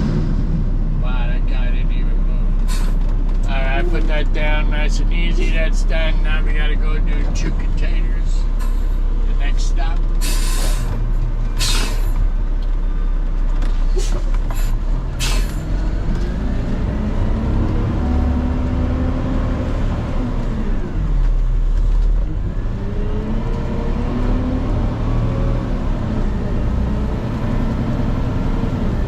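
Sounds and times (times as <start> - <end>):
diesel truck engine revving: 0.0 - 29.0
truck air system hissing: 10.2 - 10.9.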